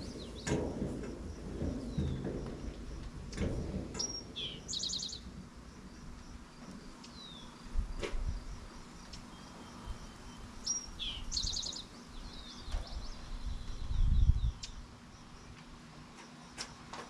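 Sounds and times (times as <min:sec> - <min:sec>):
low rumbling thumps: 0:00.0 - 0:06.4
songbirds chirping: 0:00.0 - 0:17.0.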